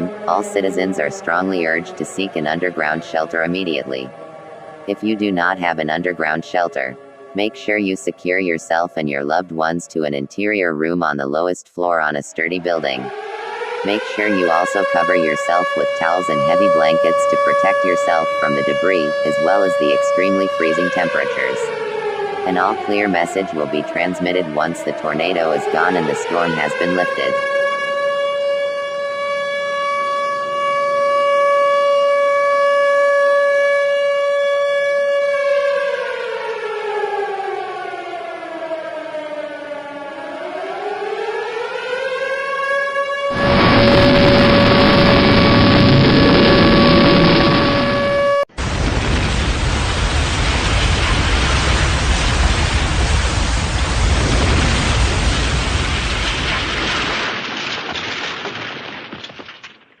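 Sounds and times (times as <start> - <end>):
warning siren wailing: 0.0 - 56.6
deep rumble: 43.3 - 57.0
roar of wind and rain: 43.3 - 57.4.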